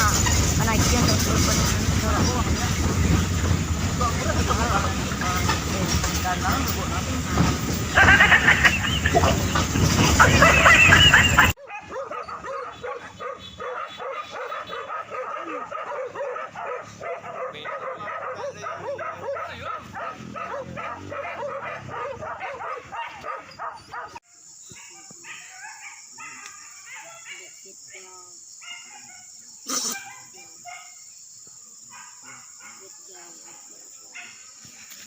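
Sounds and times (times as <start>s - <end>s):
dogs barking and yelping: 0.0s - 27.8s, 28.6s - 31.0s, 31.8s - 34.6s.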